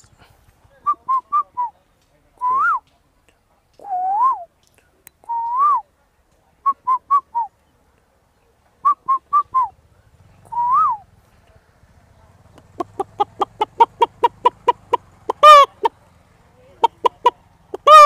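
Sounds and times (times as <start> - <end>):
man whistling bird calls: 2.4 - 2.8, 3.8 - 4.5, 5.2 - 5.8, 8.8 - 9.7, 10.5 - 11.0.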